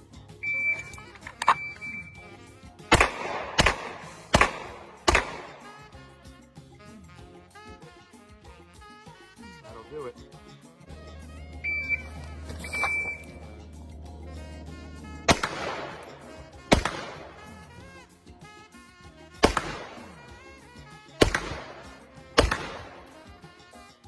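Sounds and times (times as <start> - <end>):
background music: 0.0 - 24.0
handgun shots: 0.4 - 2.0, 2.9 - 5.8, 12.8 - 13.3, 15.3 - 17.6, 19.4 - 20.3, 21.2 - 23.2.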